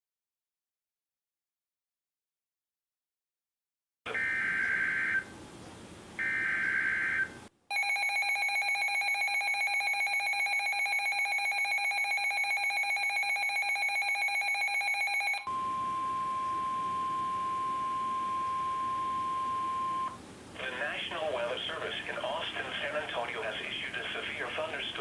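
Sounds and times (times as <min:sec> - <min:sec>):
steady warning alarm tone: 0:04.1 - 0:05.3, 0:06.2 - 0:20.2
two-tone attention alarm: 0:04.1 - 0:05.3, 0:06.2 - 0:20.2.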